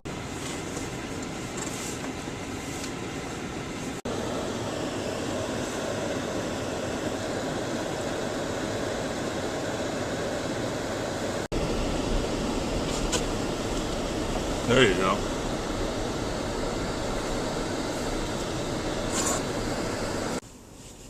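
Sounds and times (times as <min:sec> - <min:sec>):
vehicle driving through snow: 0:07.9 - 0:21.0.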